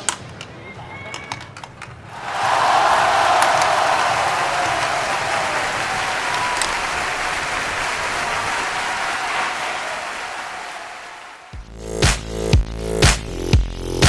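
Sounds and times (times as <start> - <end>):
crowd applause: 2.1 - 11.6.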